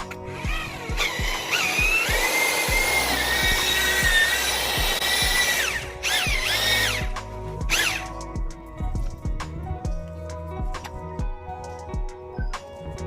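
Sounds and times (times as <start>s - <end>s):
background music with steady beat: 0.0s - 13.0s
power drill motor whining: 0.1s - 8.2s.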